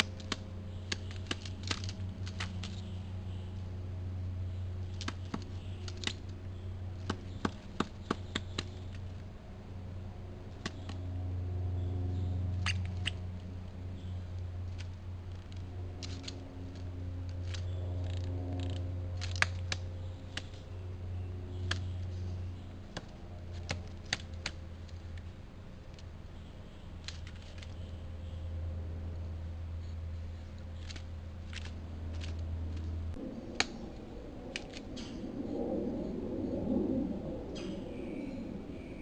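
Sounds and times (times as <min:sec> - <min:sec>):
woodpecker tapping on tree: 0:00.0 - 0:02.9, 0:04.8 - 0:09.3, 0:10.4 - 0:11.2, 0:12.6 - 0:13.5, 0:14.7 - 0:20.7, 0:21.6 - 0:26.1
low steady hum: 0:00.0 - 0:39.0.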